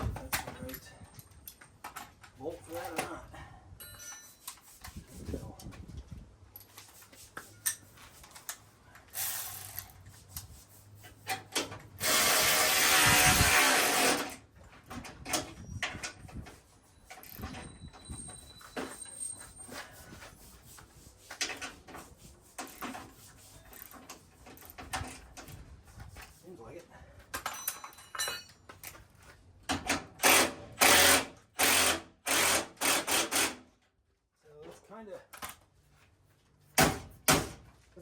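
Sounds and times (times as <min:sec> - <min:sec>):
power drill driving bolt: 0:12.0 - 0:14.4, 0:29.8 - 0:33.7
clicks and knocks of parts: 0:35.3 - 0:35.7.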